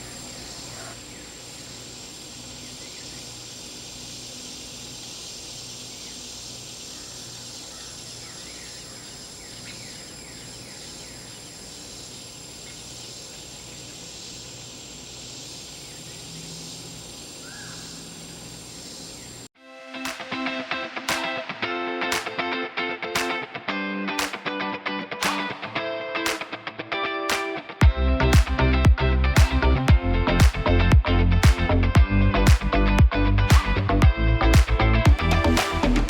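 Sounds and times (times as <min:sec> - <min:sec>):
insects chirring: 0:00.0 - 0:19.5
faint bird chirps: 0:02.6 - 0:19.5.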